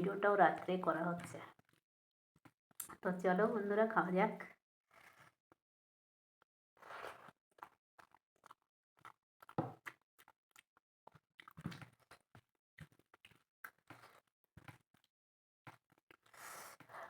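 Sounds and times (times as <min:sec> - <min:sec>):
chewing and lip smacks: 0:07.0 - 0:12.2, 0:16.0 - 0:16.4.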